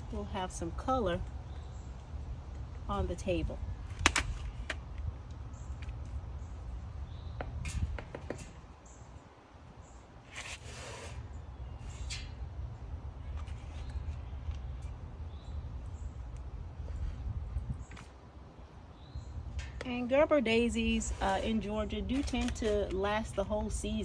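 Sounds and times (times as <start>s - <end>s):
wind buffeting microphone: 0.7s - 5.6s, 6.2s - 9.0s, 12.6s - 24.0s
small birds chirping: 1.3s - 3.4s, 5.2s - 24.0s.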